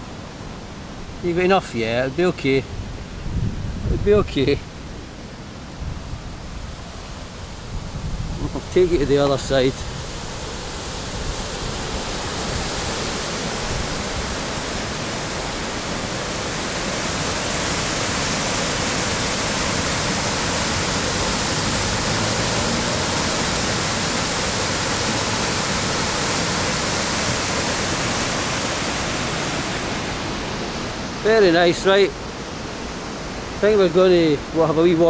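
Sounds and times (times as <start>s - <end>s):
river water rushing over rocks: 4.7s - 35.0s.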